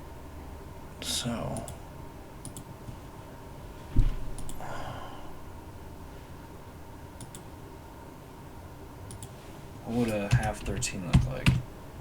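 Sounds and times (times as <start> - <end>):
computer mouse clicks: 2.4 - 2.7, 7.2 - 7.5, 9.1 - 9.4
breathy exhale: 4.6 - 5.4.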